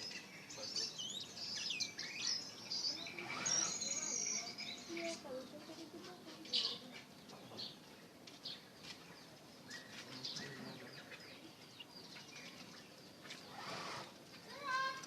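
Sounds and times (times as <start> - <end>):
bird chirping and whistling: 0.9 - 5.0.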